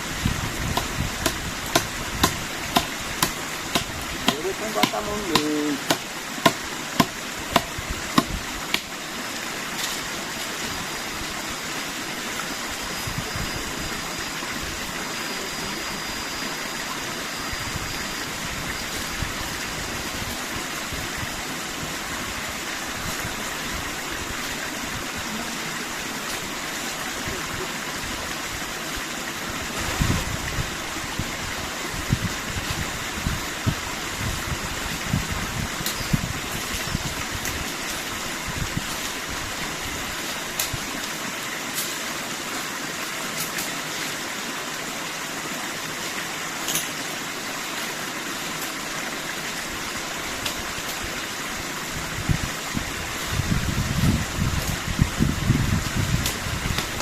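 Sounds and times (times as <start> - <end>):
creek flowing: 0.0 - 57.0.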